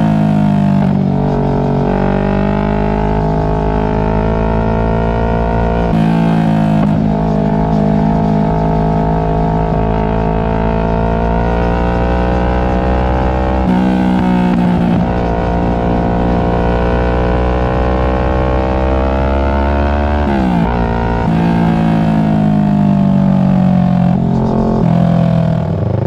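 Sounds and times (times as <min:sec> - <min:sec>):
motorcycle engine running: 0:00.0 - 0:26.0.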